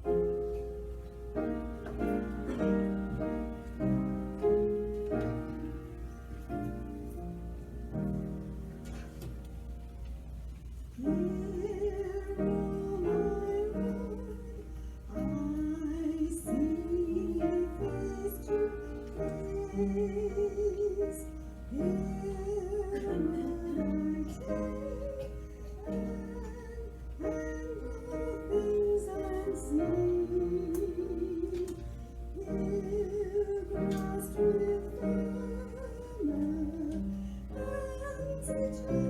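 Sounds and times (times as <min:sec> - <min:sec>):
steady low hum: 0:00.0 - 0:39.0
slow melody with vibrato: 0:11.0 - 0:39.0.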